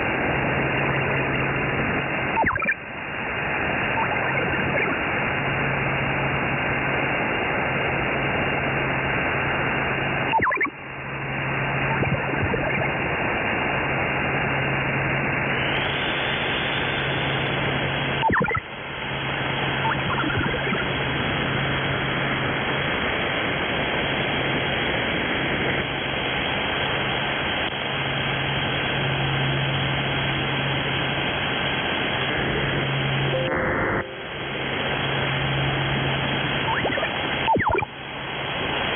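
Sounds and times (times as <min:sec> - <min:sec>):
low buzzing drone: 0:00.0 - 0:38.9
radio static hiss: 0:00.0 - 0:38.9.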